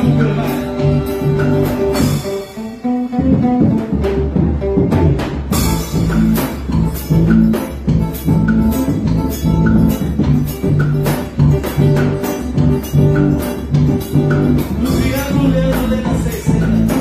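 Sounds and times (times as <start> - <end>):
bass notes: 0.0 - 17.0
guitar: 0.0 - 17.0
percussion beat: 0.0 - 17.0.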